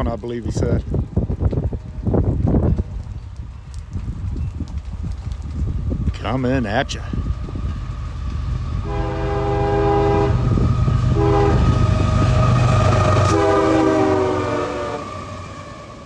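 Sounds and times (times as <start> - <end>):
train rumbling past: 0.4 - 16.0
locomotive air horn: 8.8 - 15.6.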